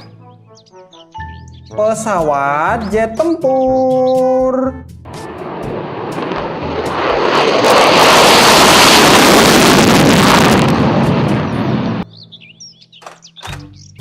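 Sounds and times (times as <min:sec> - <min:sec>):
fighter jet roar: 0:05.1 - 0:12.0.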